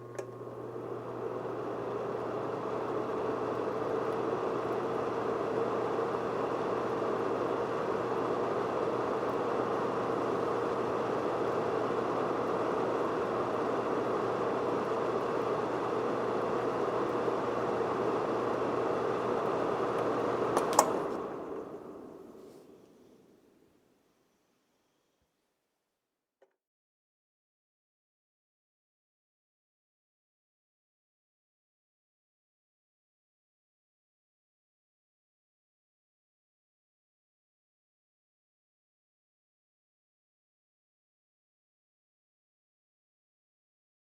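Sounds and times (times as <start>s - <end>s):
switch clicking off: 0.0s - 0.5s, 19.9s - 21.3s
fan heater blowing whir: 0.0s - 25.2s
low electrical hum: 0.0s - 25.4s.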